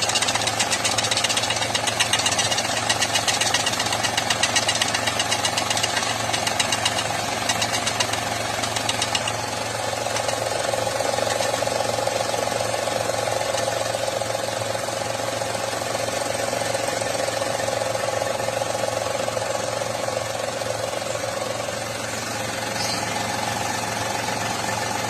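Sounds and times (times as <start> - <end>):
compressor pulley noise: 0.0 - 10.5
car engine idling: 0.0 - 25.0.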